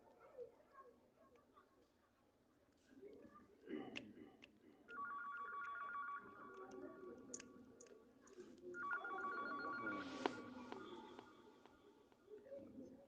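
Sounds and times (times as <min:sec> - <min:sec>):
telephone ringing: 0:04.9 - 0:07.1, 0:08.8 - 0:11.5.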